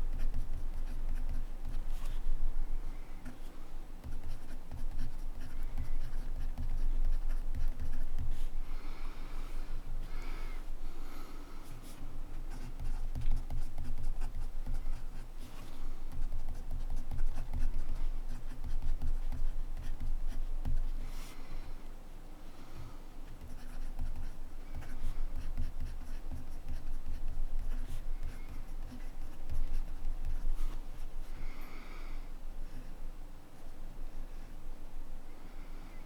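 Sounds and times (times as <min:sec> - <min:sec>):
fountain pen writing on paper: 0:04.0 - 0:08.5, 0:12.5 - 0:15.3, 0:23.4 - 0:30.4.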